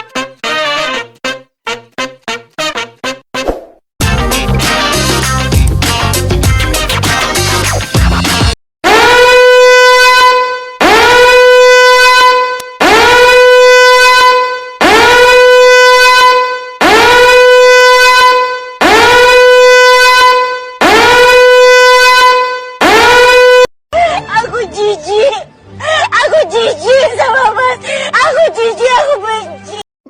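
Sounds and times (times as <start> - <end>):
buzzy horn blasts: 4.0 - 7.5, 8.8 - 23.7.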